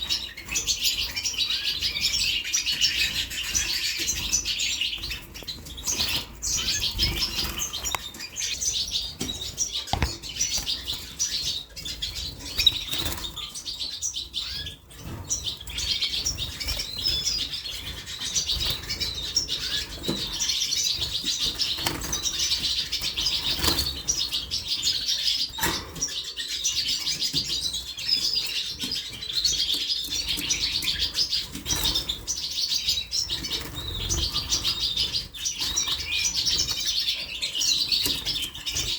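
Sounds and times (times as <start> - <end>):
canaries chirping and twittering: 0.0 - 38.9
soft knocks: 9.9 - 10.2.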